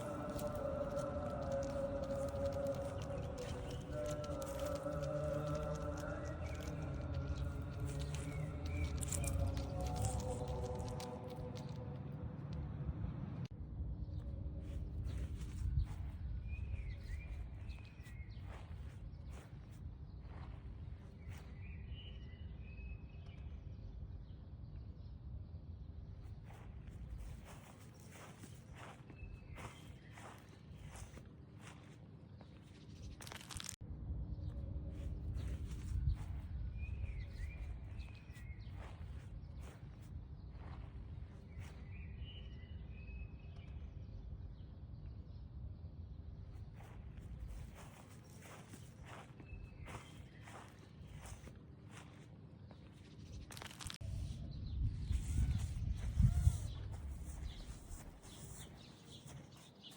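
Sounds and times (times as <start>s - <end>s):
low outdoor rumble: 0.0s - 58.5s
faint bird chirping: 14.0s - 33.5s, 34.3s - 59.9s.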